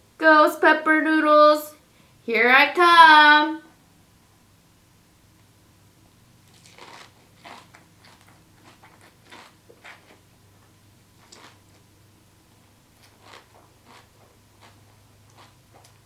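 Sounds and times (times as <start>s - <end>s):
faint steady hum: 0.0s - 16.0s
person chewing noodles: 6.4s - 10.4s, 11.1s - 12.0s, 12.6s - 16.0s.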